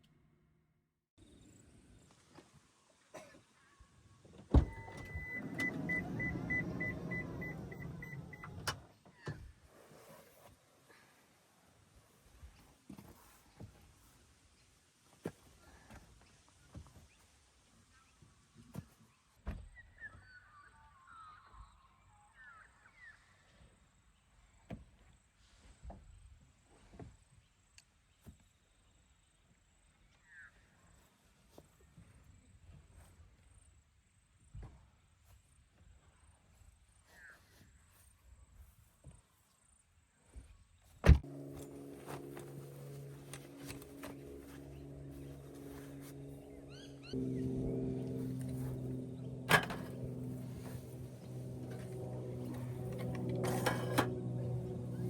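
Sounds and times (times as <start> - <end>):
sliding door motor running: 4.6 - 8.6, 41.3 - 55.0
rapid warning beeps: 4.7 - 8.5
animal chirps gliding in pitch: 46.6 - 47.5.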